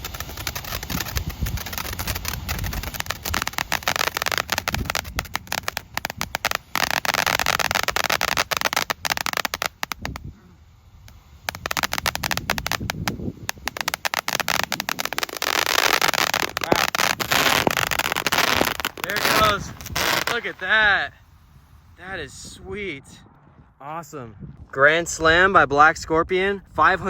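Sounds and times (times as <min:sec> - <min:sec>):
fireworks crackling and popping: 0:00.0 - 0:23.0.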